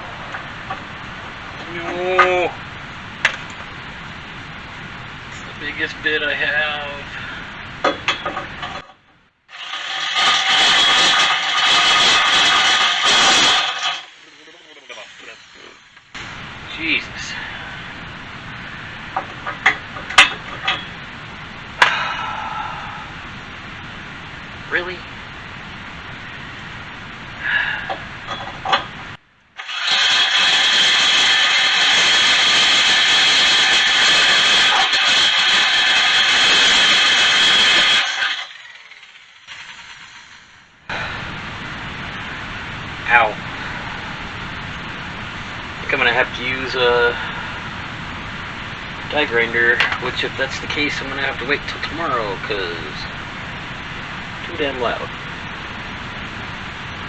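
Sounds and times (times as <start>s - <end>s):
power drill boring into metal: 9.5s - 14.2s, 29.6s - 40.5s
scrapes and squeals: 9.6s - 15.8s.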